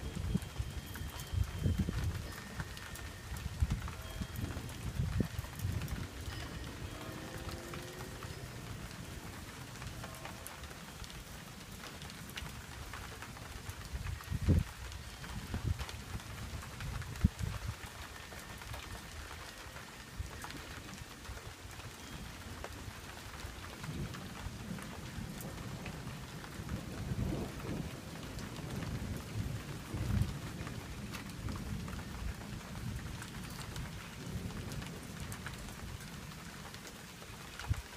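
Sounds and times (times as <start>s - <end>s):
rain falling steadily: 0.0s - 37.9s
raindrops ticking: 0.0s - 37.9s
thunder rumbling low: 1.4s - 14.8s, 23.7s - 36.5s.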